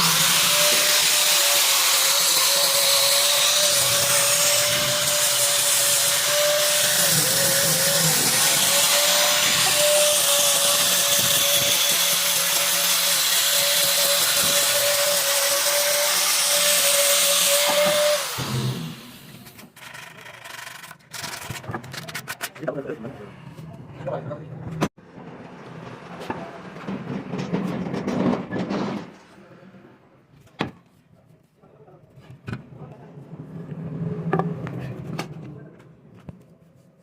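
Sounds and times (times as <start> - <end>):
power tool whining on wood: 0.0 - 21.7.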